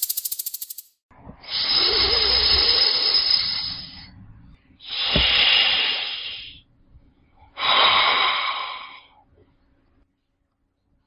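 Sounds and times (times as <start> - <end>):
snake hissing: 0.0 - 4.1, 4.9 - 6.6, 7.6 - 9.1.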